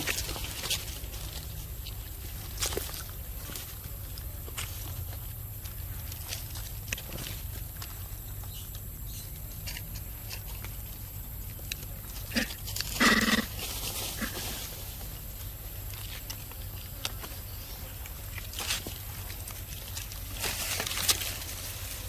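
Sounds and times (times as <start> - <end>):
steady low hum: 0.0 - 22.0
animal calls: 12.1 - 14.7.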